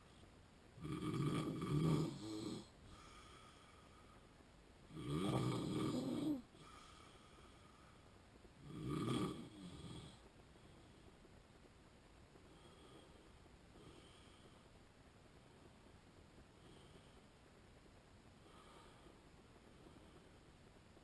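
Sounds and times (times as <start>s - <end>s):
man snoring: 0.8s - 3.4s, 4.9s - 6.8s, 8.6s - 10.2s.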